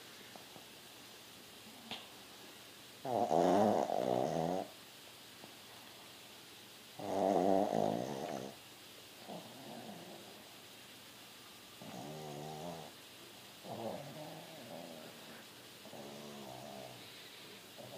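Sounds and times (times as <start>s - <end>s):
dog snoring: 3.0s - 4.7s, 7.0s - 8.6s, 9.2s - 10.3s, 11.8s - 13.0s, 13.6s - 17.2s.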